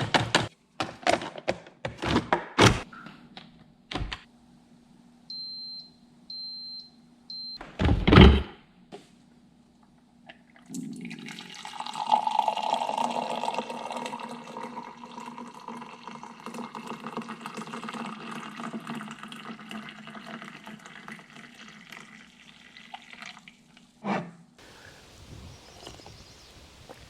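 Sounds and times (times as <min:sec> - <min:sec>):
hot water trickling: 0:10.3 - 0:24.0
outdoor ambience: 0:20.8 - 0:27.0.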